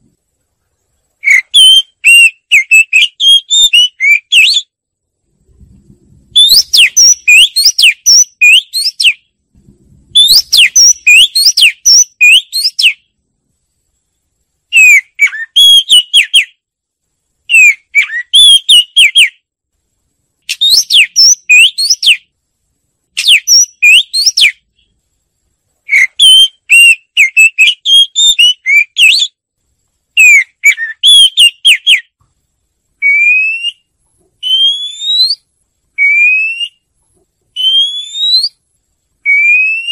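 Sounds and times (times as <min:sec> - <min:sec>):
bird singing whistled phrases: 0:01.2 - 0:04.7, 0:06.3 - 0:09.3, 0:10.2 - 0:13.1, 0:14.7 - 0:16.6, 0:17.5 - 0:19.4, 0:20.5 - 0:22.3, 0:23.2 - 0:24.6, 0:25.9 - 0:29.4, 0:30.2 - 0:32.1, 0:33.0 - 0:36.8, 0:37.6 - 0:38.6, 0:39.2 - 0:39.9.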